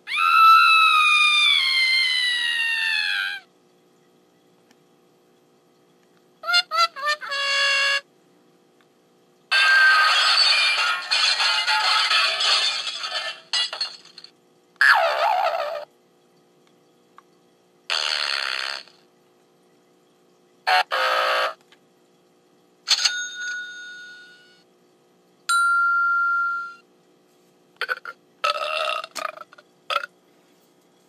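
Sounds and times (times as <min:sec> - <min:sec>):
bell-like ring: 0:22.9 - 0:24.6, 0:25.5 - 0:26.8.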